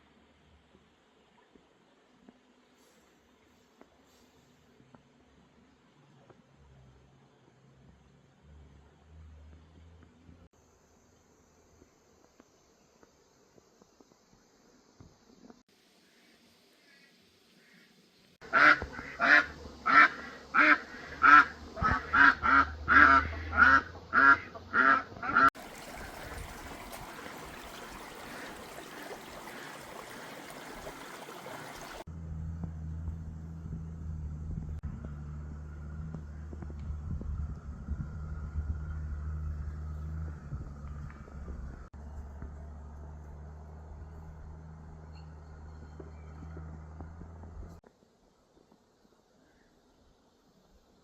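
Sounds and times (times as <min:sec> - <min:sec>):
waterfowl calling loudly: 0:18.4 - 0:32.0.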